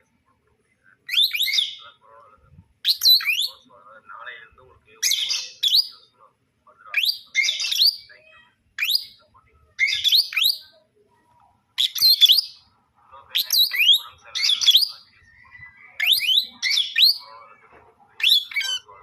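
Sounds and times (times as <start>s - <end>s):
lovebird chirping: 1.0s - 2.0s, 2.8s - 3.7s, 5.0s - 6.1s, 6.9s - 8.2s, 8.8s - 17.6s, 18.2s - 19.0s.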